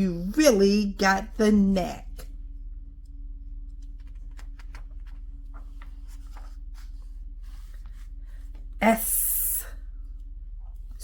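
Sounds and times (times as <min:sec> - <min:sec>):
steady low hum: 0:00.0 - 0:11.0
paper pages turning: 0:03.0 - 0:08.8.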